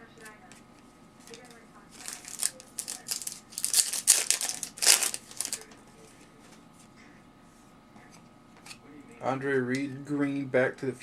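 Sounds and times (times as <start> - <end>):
foil wrapper crinkling and tearing: 1.2 - 5.8.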